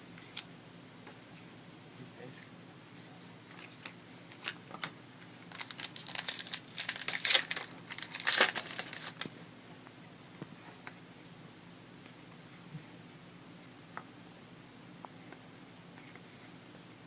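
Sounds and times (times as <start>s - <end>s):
wrapper crinkling and tearing: 3.5s - 9.4s.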